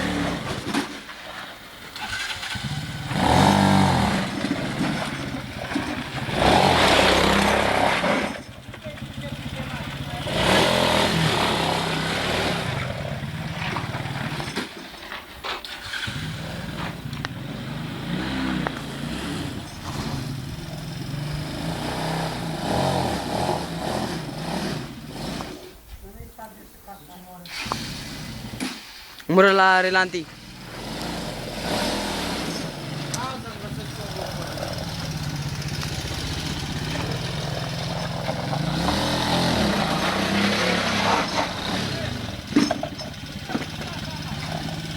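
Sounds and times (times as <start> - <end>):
engine running at low revs: 1.9 - 14.7, 15.8 - 25.8, 30.3 - 44.9.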